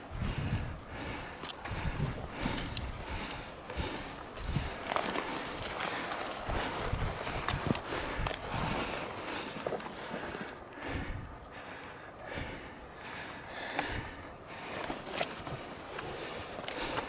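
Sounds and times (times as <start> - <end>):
person breathing hard: 0.0 - 17.0
faint clicks: 9.6 - 12.0.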